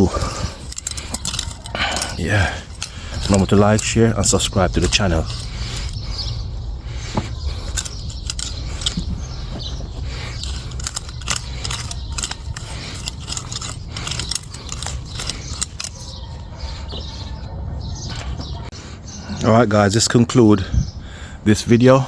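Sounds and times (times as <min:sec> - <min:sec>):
irregular clicks and scrapes: 0:00.2 - 0:17.5
steady low rumble: 0:02.5 - 0:19.0.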